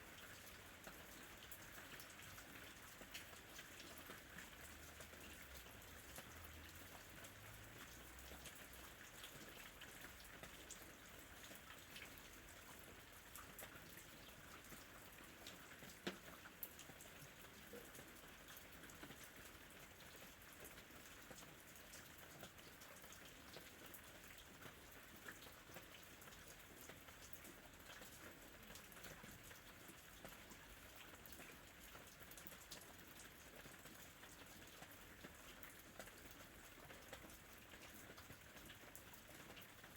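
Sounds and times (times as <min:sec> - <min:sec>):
faint steady rain: 0:00.0 - 0:39.9
raindrop ticks: 0:14.6 - 0:39.9.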